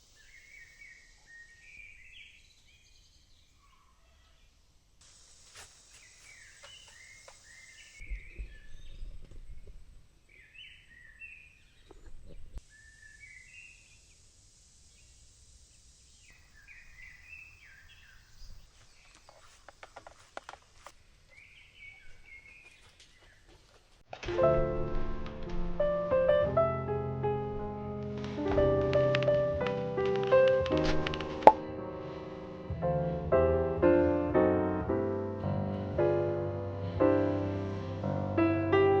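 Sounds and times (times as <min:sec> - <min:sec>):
birds chirping: 0:00.0 - 0:04.7, 0:05.8 - 0:14.2, 0:16.2 - 0:23.8
faint rural background noise: 0:00.0 - 0:39.0.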